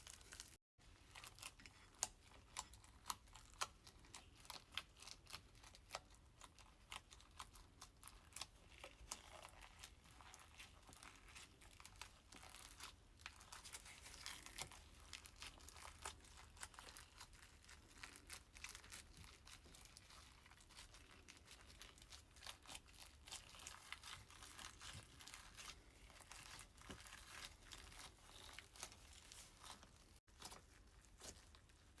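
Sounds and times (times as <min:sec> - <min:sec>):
slime crackling and popping: 0:00.0 - 0:32.0.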